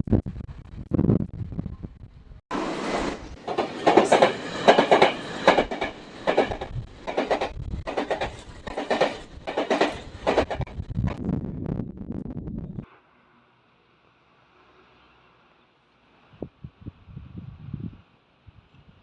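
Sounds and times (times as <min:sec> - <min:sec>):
train wheels clattering over rail joints: 0:02.5 - 0:10.8.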